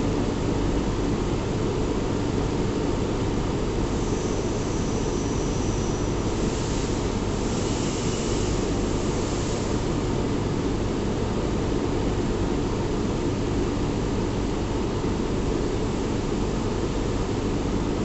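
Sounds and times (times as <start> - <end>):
machinery hiss: 3.9 - 9.9.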